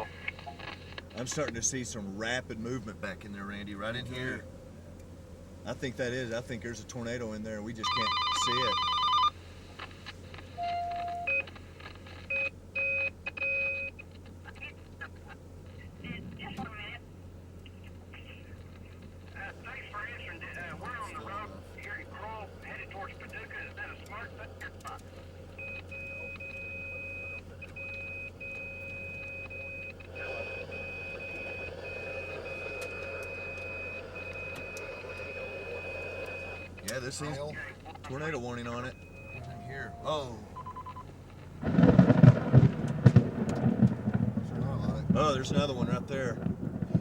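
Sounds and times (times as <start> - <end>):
steady low hum: 0.0 - 47.0
vehicle road noise: 0.0 - 47.0
phone electronic beeps: 7.8 - 9.3, 10.6 - 11.5, 12.2 - 14.0, 25.6 - 36.7, 38.9 - 41.1.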